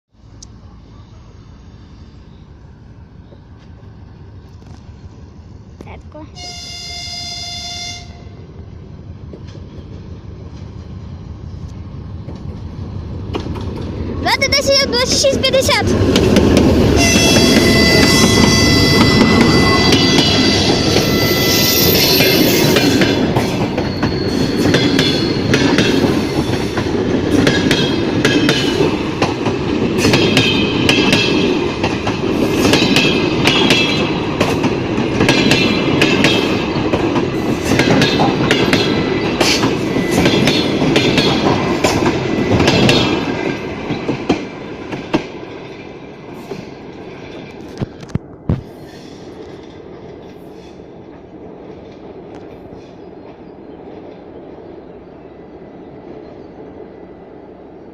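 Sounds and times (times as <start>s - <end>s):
receding train rumble: 0.1s - 57.9s
train wheels clicking over rail joints: 11.5s - 14.1s, 14.7s - 53.4s
high-pitched wheel squeal: 17.0s - 22.8s, 23.7s - 25.5s.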